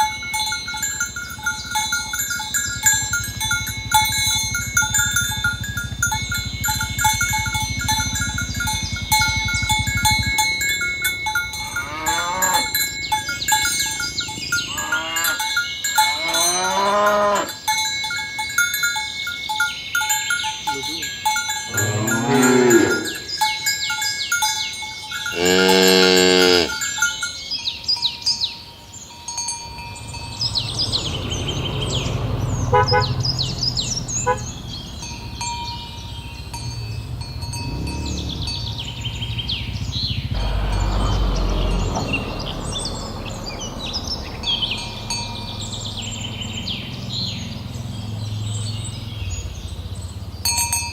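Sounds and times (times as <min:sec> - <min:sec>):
bell tones ringing: 0:00.0 - 0:32.0, 0:35.0 - 0:47.0
birds chirping: 0:00.0 - 0:50.9
cows mooing: 0:02.1 - 0:17.6, 0:21.7 - 0:23.4, 0:25.2 - 0:27.1, 0:30.4 - 0:34.8, 0:37.3 - 0:48.4.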